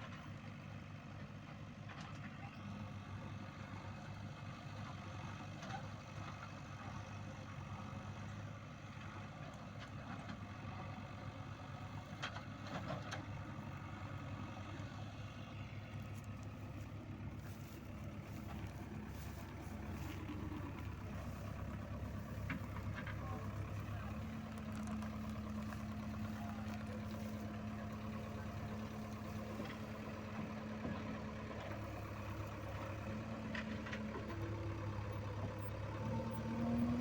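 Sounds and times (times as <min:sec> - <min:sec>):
diesel engine running: 0:00.0 - 0:37.0.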